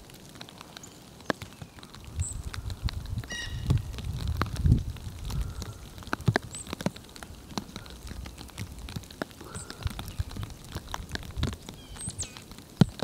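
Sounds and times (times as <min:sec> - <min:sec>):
small birds chirping: 0:00.5 - 0:13.0
light ticks and taps: 0:03.7 - 0:13.0.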